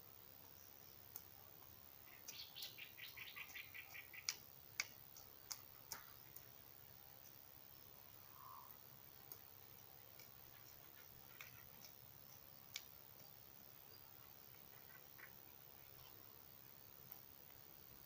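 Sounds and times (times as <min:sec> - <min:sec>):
bird chattering call: 0:02.1 - 0:04.3
sharp clicks: 0:03.4 - 0:06.5, 0:12.7 - 0:13.4.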